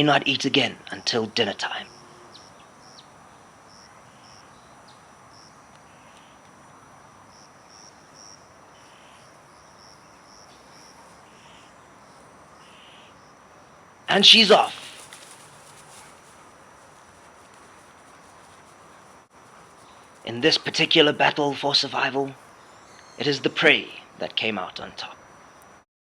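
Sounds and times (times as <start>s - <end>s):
soft steady hiss: 0.0s - 25.8s.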